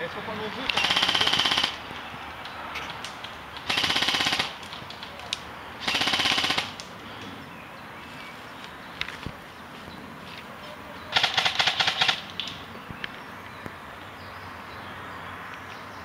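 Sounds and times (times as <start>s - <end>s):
airsoft gun full-auto bursts: 0.7s - 1.8s, 3.6s - 4.6s, 5.8s - 6.8s, 11.1s - 12.3s.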